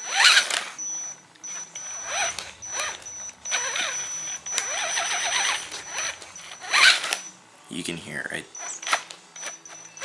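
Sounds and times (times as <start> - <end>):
electric motor whine: 0.0 - 7.4, 8.6 - 10.0
drivetrain popping: 1.6 - 7.3.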